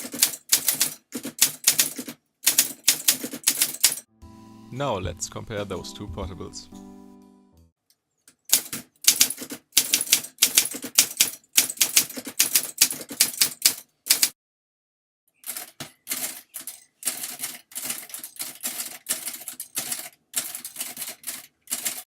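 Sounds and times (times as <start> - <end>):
typewriter keystroke clacks: 0.0 - 4.1, 8.5 - 14.4, 15.4 - 22.0.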